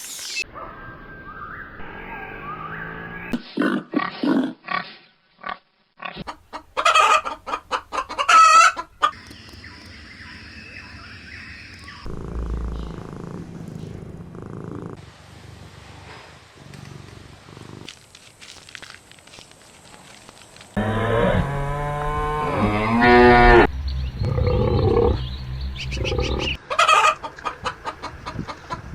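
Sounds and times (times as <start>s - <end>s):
farmyard background: 3.4s - 14.2s, 17.1s - 28.9s
chickens clucking: 6.2s - 12.1s, 26.0s - 28.9s.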